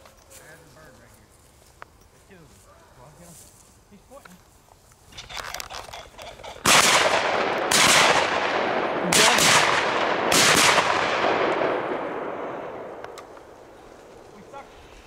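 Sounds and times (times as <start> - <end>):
shotgun shots echoing: 6.6 - 13.7.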